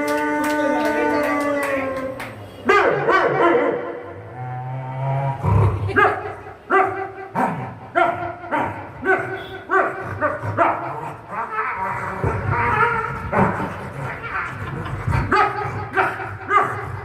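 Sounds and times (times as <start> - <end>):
person imitating a dog: 7.3 - 17.0.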